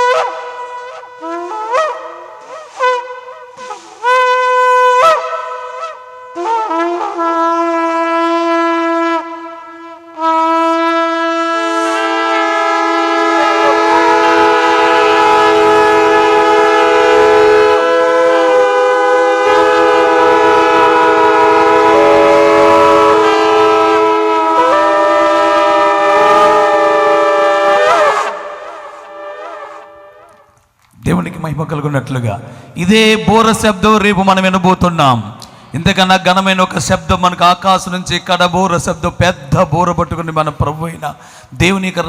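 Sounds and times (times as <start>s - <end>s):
ceremonial horns blowing: 0.0s - 30.6s.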